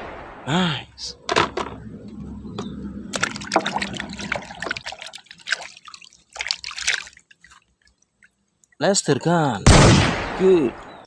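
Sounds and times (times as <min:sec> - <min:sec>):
water trickling and splashing: 0:01.2 - 0:09.6.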